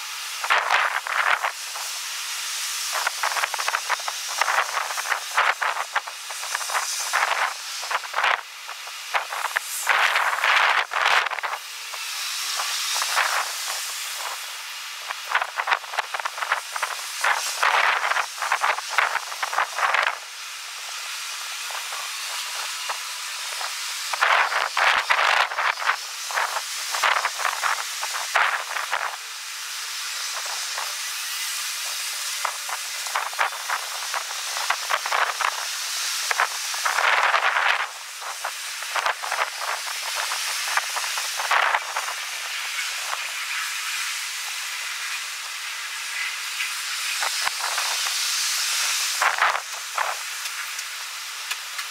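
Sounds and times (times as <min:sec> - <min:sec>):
wind rushing over microphone: 0:02.9 - 0:11.7, 0:12.6 - 0:20.3, 0:21.6 - 0:29.2, 0:32.4 - 0:43.4, 0:49.0 - 0:50.2.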